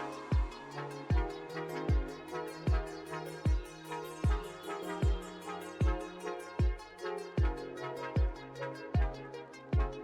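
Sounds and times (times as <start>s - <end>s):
heavy kick drum beat: 0.3s - 2.1s, 2.7s - 7.6s, 8.2s - 8.4s, 9.0s - 9.2s, 9.8s - 10.0s.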